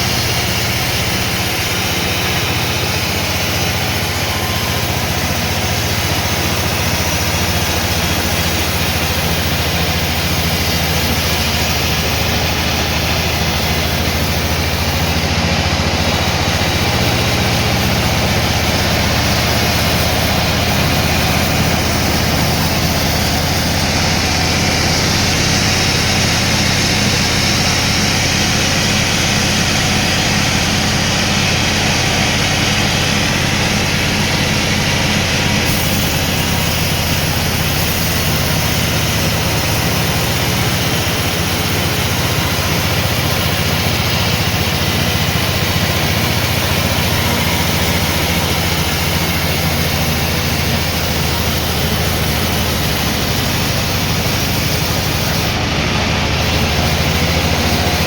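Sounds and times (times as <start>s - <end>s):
sawmill machinery drone: 0.0s - 58.0s
dense hiss: 35.6s - 55.6s.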